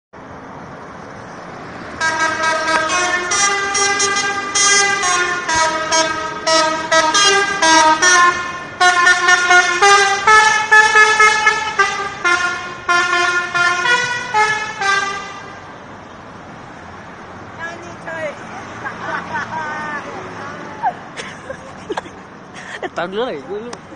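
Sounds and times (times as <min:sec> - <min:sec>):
bus musical horn toots: 0:02.0 - 0:15.7.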